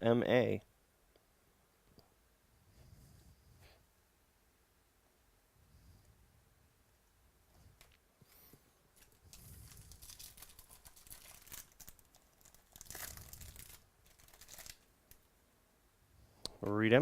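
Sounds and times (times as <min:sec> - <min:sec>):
card wrappers crinkling and tearing: 0:09.0 - 0:15.2.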